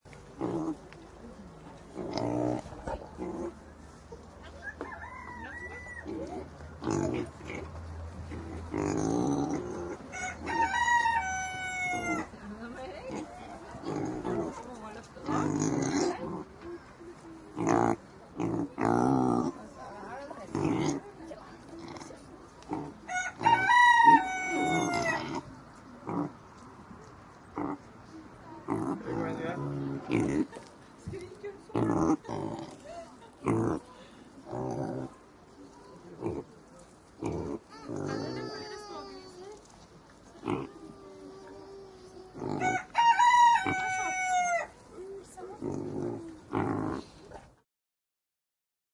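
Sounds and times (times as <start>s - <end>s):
pig grunting: 0.3s - 0.8s, 1.9s - 3.6s, 6.0s - 10.6s, 13.0s - 16.6s, 17.5s - 23.7s, 24.4s - 26.4s, 27.5s - 27.9s, 28.6s - 30.7s, 31.7s - 35.2s, 36.2s - 36.5s, 37.2s - 39.7s, 40.4s - 42.8s, 45.6s - 47.2s
rooster crowing: 4.6s - 6.1s, 10.1s - 12.3s, 23.1s - 25.2s, 42.6s - 44.7s
chicken long drawn-out call: 10.1s - 12.3s, 23.1s - 25.3s, 41.2s - 44.7s.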